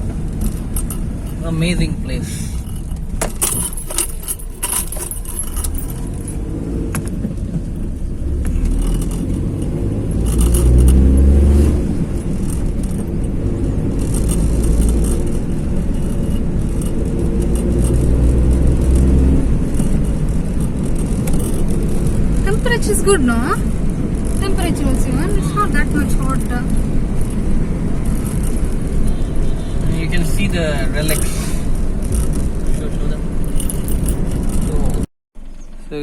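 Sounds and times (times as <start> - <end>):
light rattling: 0.0 - 28.9, 30.1 - 36.0
car engine and tyre rumble: 0.0 - 36.0.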